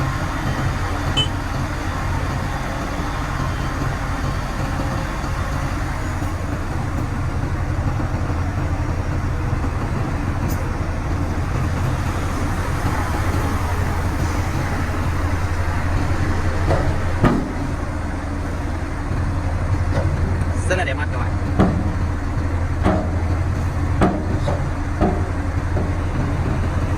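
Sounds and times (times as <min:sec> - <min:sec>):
diesel truck engine droning: 0:00.0 - 0:26.9
loud thump: 0:11.7 - 0:18.0.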